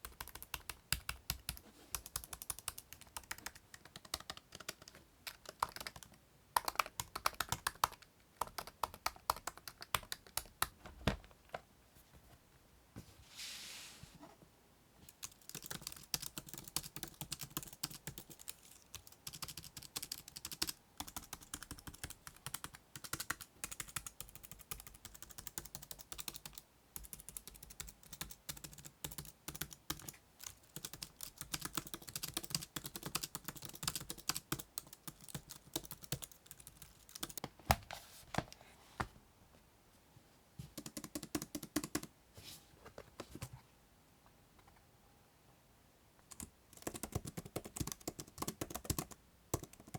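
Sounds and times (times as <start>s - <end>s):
laptop keyboard typing clicks: 0.0s - 10.8s, 15.2s - 37.4s, 46.3s - 49.9s.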